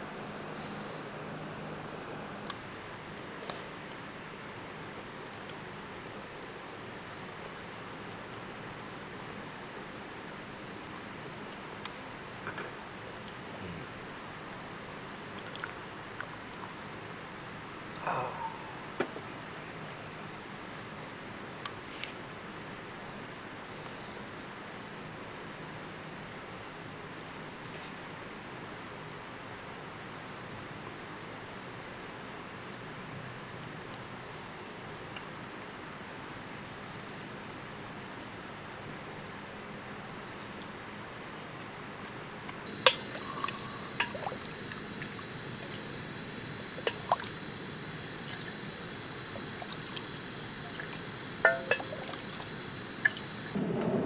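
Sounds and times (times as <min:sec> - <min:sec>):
creek water running: 0:42.7 - 0:54.0.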